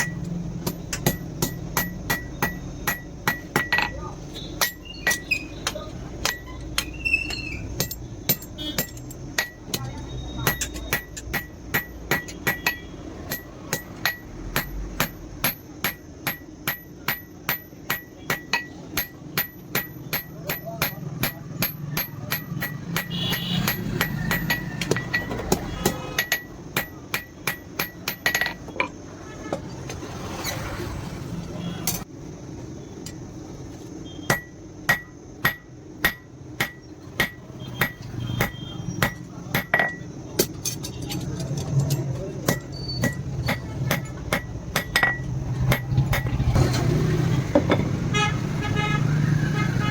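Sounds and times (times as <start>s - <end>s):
hammer striking steel on anvil: 0.0s - 6.9s, 7.8s - 28.9s, 34.3s - 40.9s, 42.4s - 46.4s.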